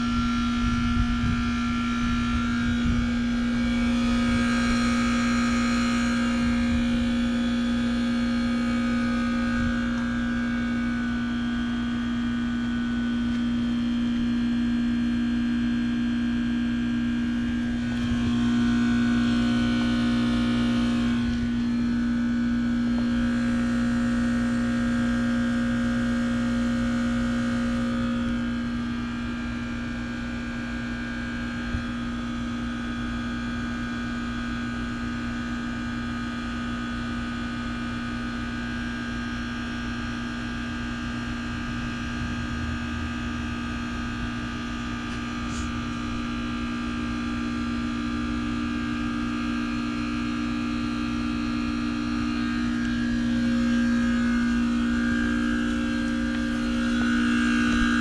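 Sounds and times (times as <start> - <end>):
heat pump compressor hum: 0.0 - 58.0.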